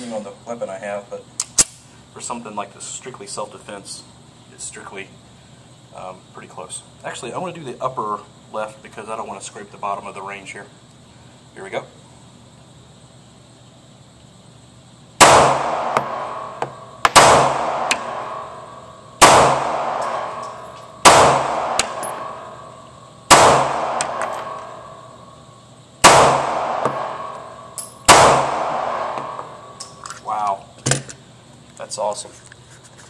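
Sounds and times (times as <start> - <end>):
pistol shots echoing indoors: 15.2 - 25.3, 26.0 - 30.0.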